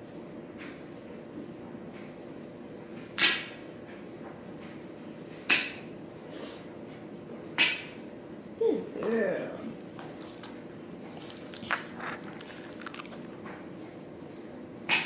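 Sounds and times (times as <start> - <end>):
low steady hum: 8.2 - 15.0.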